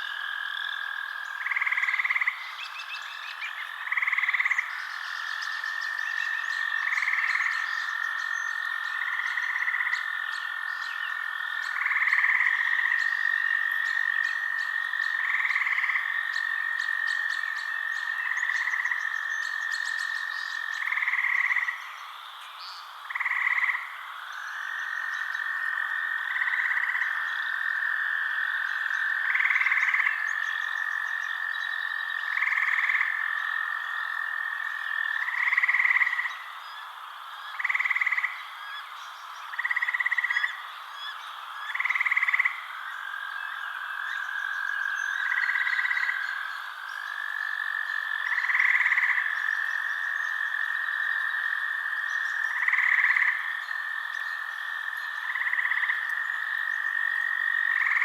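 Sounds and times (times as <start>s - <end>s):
frogs trilling: 0.0s - 58.0s
loud short frog calls: 23.0s - 58.0s.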